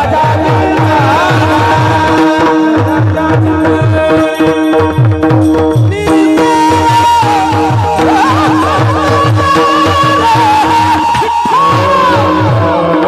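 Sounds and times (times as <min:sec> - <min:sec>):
sharp drum strikes: 0:00.0 - 0:13.0.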